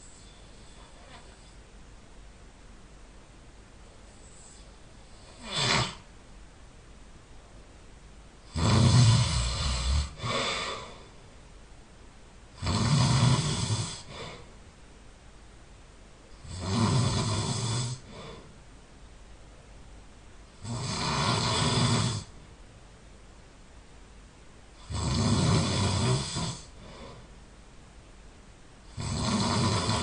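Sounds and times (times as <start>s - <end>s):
person snoring loudly: 5.2s - 6.1s, 8.5s - 11.0s, 12.6s - 14.5s, 16.4s - 18.4s, 20.6s - 22.4s, 24.8s - 27.2s, 28.9s - 30.0s.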